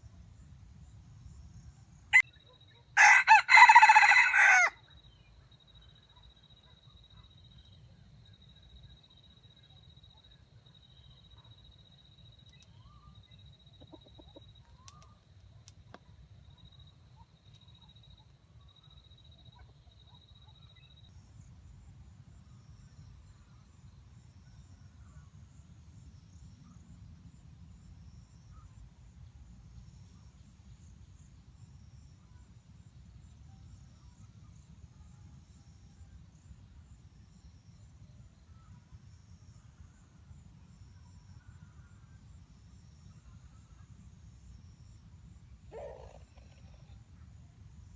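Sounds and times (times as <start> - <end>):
faint fowl clucking: 13.7 - 14.6.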